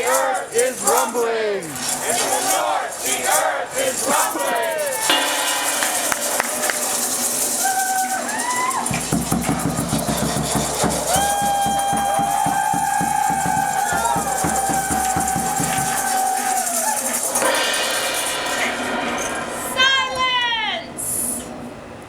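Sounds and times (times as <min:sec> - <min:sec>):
fast ritual percussion: 0:00.0 - 0:21.4
long wailing howling tones: 0:10.9 - 0:17.4.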